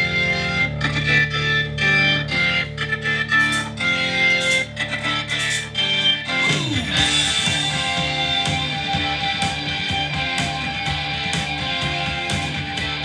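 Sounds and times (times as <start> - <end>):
rock music with electric guitar: 0.0 - 13.0.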